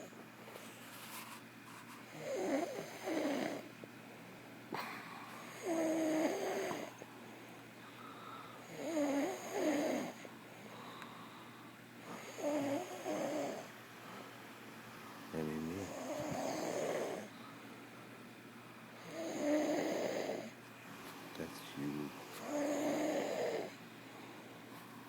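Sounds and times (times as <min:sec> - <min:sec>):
quiet breathing: 0:04.7 - 0:18.0, 0:18.9 - 0:25.0
person snoring: 0:08.7 - 0:10.2, 0:15.8 - 0:17.3, 0:19.0 - 0:20.5, 0:22.4 - 0:23.8.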